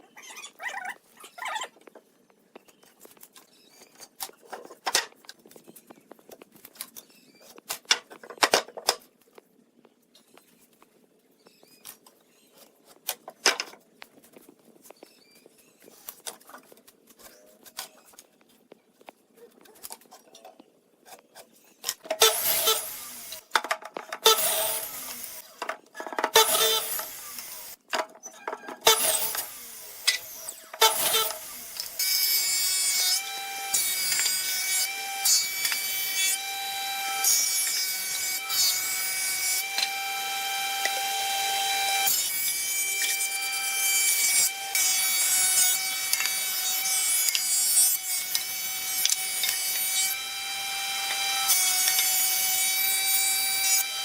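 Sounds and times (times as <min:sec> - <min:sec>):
tool cutting wood: 0:21.0 - 0:25.7, 0:26.3 - 0:27.8, 0:28.8 - 0:54.0
whining cut: 0:22.2 - 0:23.5, 0:24.2 - 0:25.6, 0:26.4 - 0:27.8, 0:28.8 - 0:54.0.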